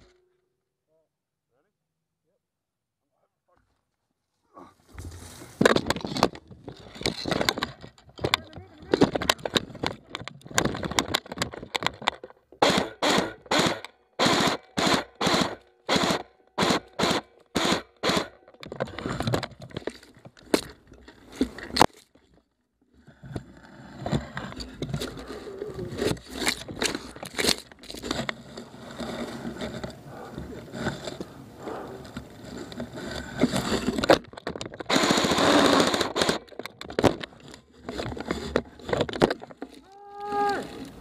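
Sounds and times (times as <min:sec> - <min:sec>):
rustling of movement: 0:03.6 - 0:12.2, 0:23.2 - 0:41.0
airsoft gun bursts: 0:12.6 - 0:18.4.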